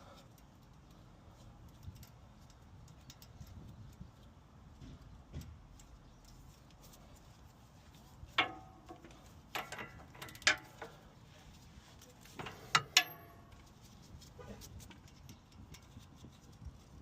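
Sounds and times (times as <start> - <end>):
metal tools clinking on steel: 8.4 - 11.1, 12.2 - 13.8.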